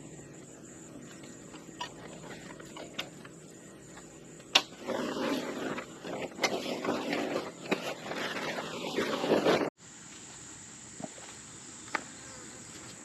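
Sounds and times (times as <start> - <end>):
high insect drone: 0.0 - 6.4, 9.8 - 13.0
rustling and scraping handling: 0.9 - 4.1, 4.7 - 9.7.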